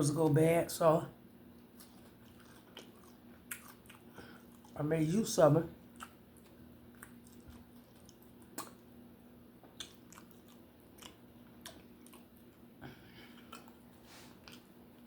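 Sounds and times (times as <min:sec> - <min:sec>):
person chewing food: 0:01.5 - 0:04.8, 0:05.8 - 0:15.0.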